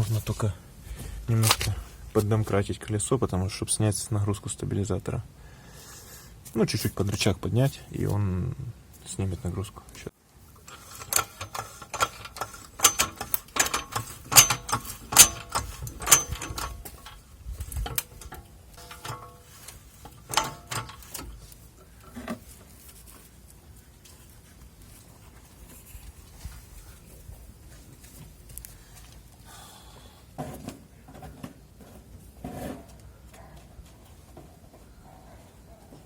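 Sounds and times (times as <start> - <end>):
metallic clanks and knocks: 10.6 - 21.4.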